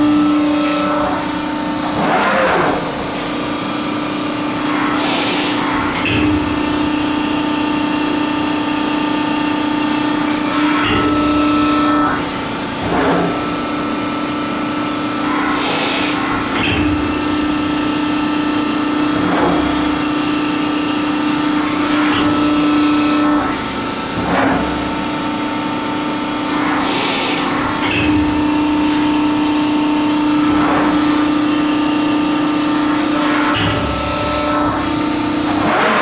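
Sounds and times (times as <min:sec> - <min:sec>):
hydraulic pump hum: 0:00.0 - 0:36.0
machine whirring bursts: 0:26.5 - 0:36.0.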